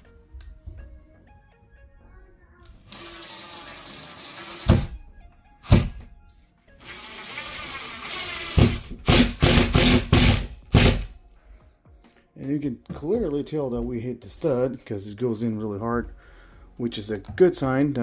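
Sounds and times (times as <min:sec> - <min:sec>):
power drill whirring: 0:02.7 - 0:04.9, 0:06.8 - 0:11.1
drill short hard bursts: 0:06.8 - 0:11.1.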